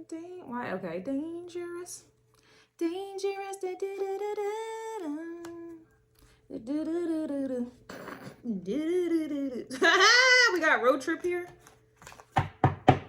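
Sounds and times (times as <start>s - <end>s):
woman humming: 6.5s - 10.6s.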